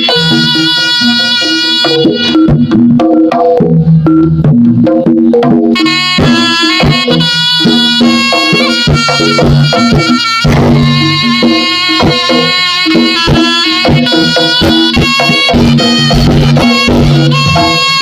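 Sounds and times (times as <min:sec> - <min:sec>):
hand drums in busy rhythm: 0:00.0 - 0:18.0
sustained high melody: 0:05.8 - 0:18.0.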